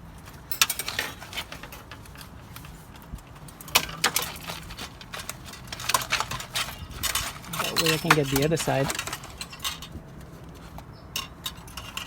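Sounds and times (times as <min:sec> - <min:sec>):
metal clinking and rattling: 0:00.4 - 0:12.0.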